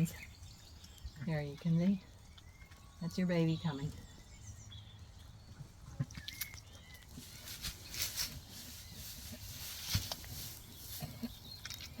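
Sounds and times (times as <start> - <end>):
sheep rustling: 6.2 - 12.0.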